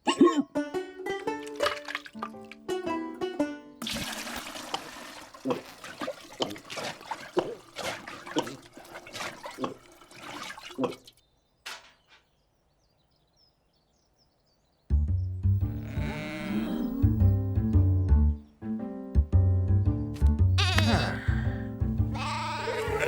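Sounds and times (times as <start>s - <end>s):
water splashing and sloshing: 1.2s - 2.8s, 3.8s - 12.3s.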